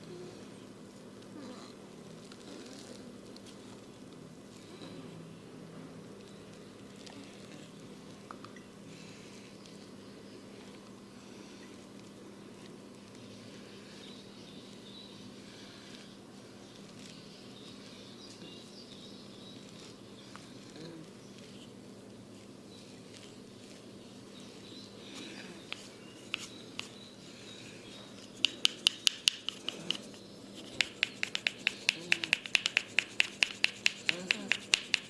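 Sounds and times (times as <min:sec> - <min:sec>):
rapid tapping on head: 0:25.7 - 0:26.9, 0:28.3 - 0:35.0.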